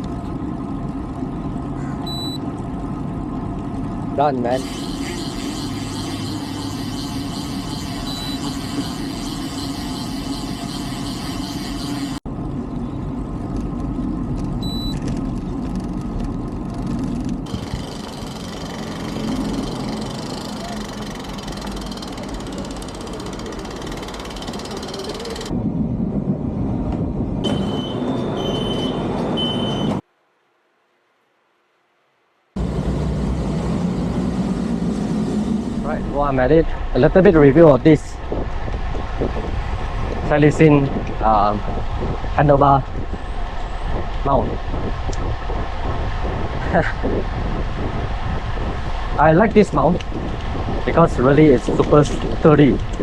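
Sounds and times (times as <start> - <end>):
wind and road noise: 0.0 - 30.2, 32.6 - 53.0
short high beeps: 2.1 - 2.4, 4.6 - 12.2, 27.5 - 30.0.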